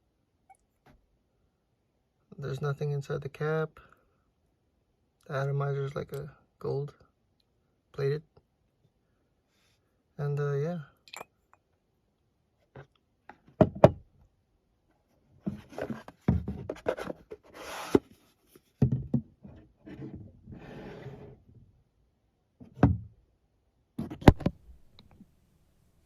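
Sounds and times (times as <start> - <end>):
rubbing and shuffling: 15.4 - 18.8.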